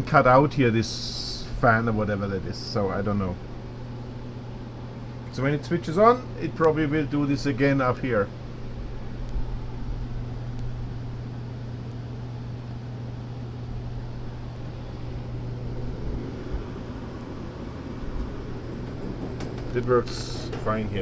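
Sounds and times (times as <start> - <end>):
furnace humming: 0.0 - 21.0.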